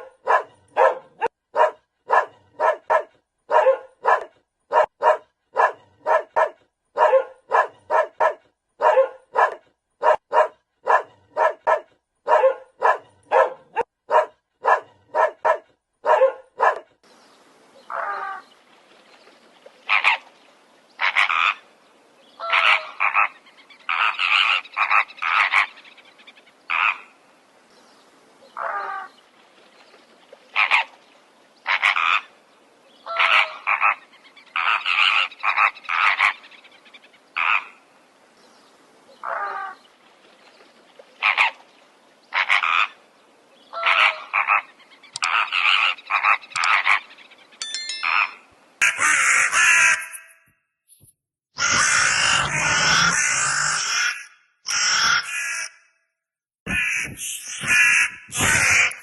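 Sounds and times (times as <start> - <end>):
faint steady hiss: 17.0 - 21.0, 25.3 - 31.7, 36.5 - 39.2
animal calls: 43.7 - 47.1, 51.6 - 55.8, 56.7 - 59.0.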